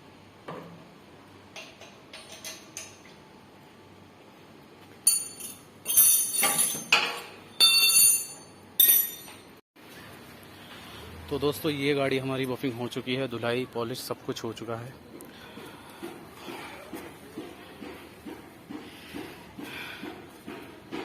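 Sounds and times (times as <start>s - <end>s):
metal tools clinking: 5.0s - 9.6s.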